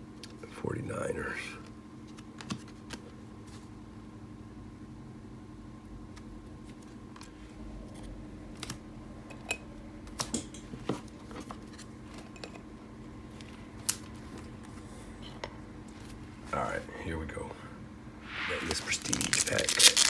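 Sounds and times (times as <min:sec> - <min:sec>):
faint steady hum: 0:00.0 - 0:20.0
trading cards being handled: 0:18.3 - 0:20.0.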